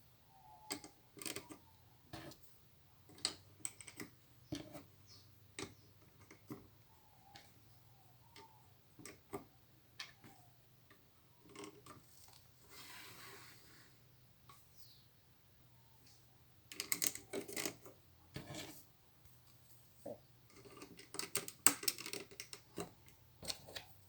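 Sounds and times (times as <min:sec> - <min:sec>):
plastic bricks clicking: 0:16.7 - 0:17.9, 0:20.5 - 0:23.6.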